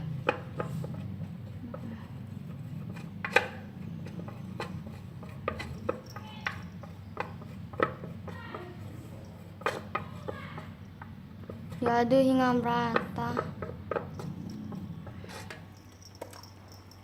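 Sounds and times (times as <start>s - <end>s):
steady low hum: 0.0s - 17.0s
spoon clinking against container: 5.2s - 7.4s.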